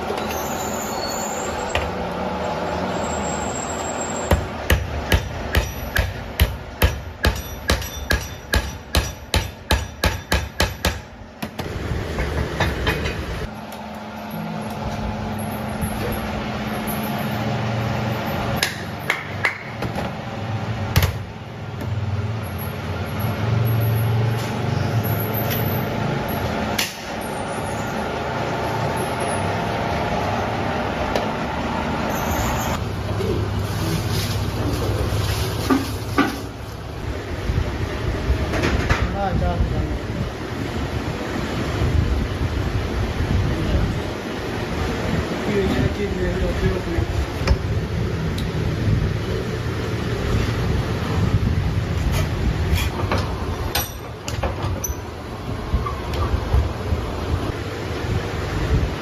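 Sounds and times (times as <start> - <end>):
hammer strikes on metal: 4.3 - 11.6, 18.6 - 19.9, 53.1 - 55.0.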